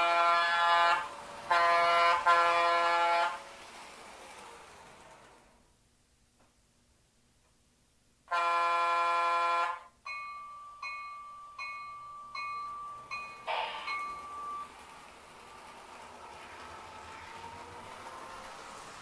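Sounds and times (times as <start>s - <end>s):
model train horn blast: 0.0s - 3.5s, 8.3s - 9.9s
locomotive bell dinging: 10.0s - 15.0s.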